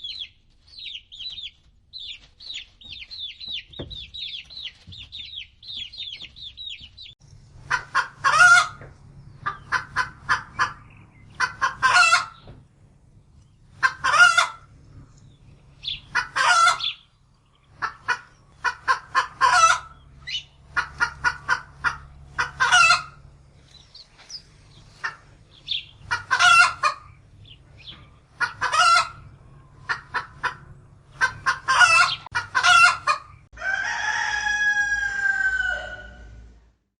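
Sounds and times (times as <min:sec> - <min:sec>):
chicks peeping: 0:00.0 - 0:36.2
chickens clucking: 0:00.0 - 0:36.5
rooster crowing: 0:33.6 - 0:36.5.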